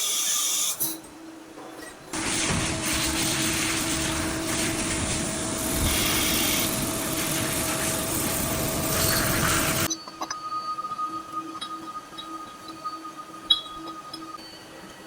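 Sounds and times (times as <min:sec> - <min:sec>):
machine hum: 0:02.1 - 0:09.9
machine tool cutting metal: 0:02.2 - 0:09.9.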